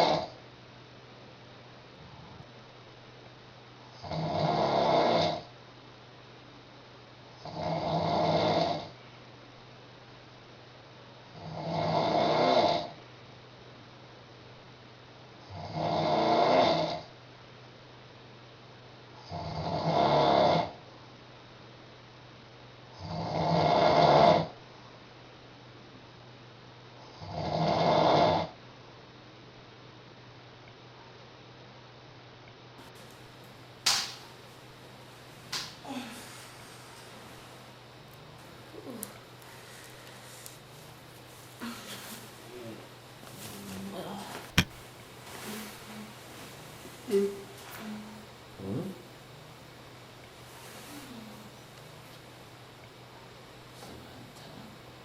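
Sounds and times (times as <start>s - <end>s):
woman snoring loudly: 4.0s - 5.5s, 7.4s - 8.9s, 11.4s - 12.9s, 15.5s - 17.1s, 19.3s - 20.8s, 23.0s - 24.5s, 27.2s - 28.5s, 35.6s - 37.7s, 38.3s - 40.9s, 47.1s - 49.6s, 50.9s - 51.6s.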